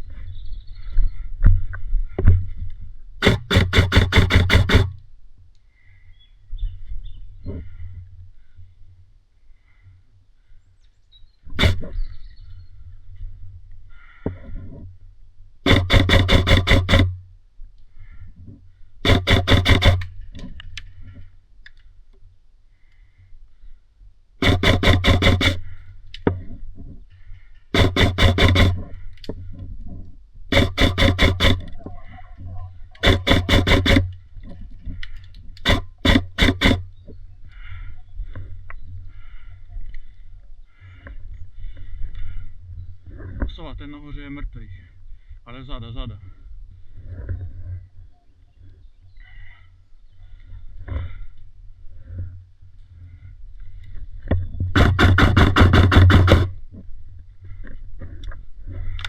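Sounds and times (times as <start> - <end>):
airsoft gun automatic fire: 3.2 - 5.0, 11.6 - 11.9, 15.6 - 17.2, 19.0 - 20.1, 24.4 - 25.6, 27.8 - 28.8, 30.5 - 31.7, 33.0 - 34.2, 35.6 - 36.9, 54.8 - 56.6.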